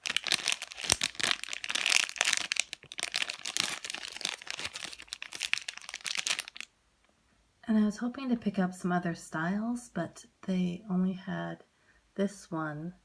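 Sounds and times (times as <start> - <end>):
plastic packaging crinkling: 0.0 - 6.7.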